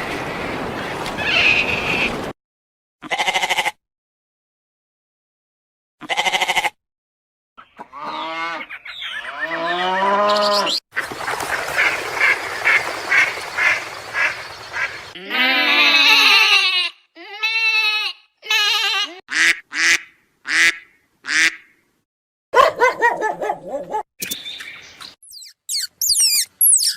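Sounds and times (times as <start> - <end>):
animal bleating: 3.0 - 3.8, 6.0 - 6.8, 15.2 - 19.2.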